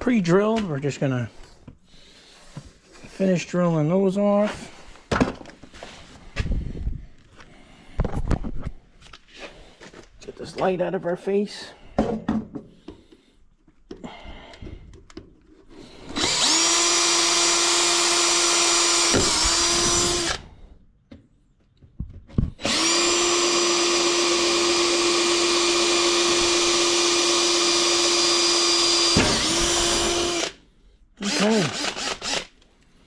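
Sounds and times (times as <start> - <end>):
power drill boring into wood: 15.7 - 20.5, 22.6 - 30.6, 31.2 - 32.6.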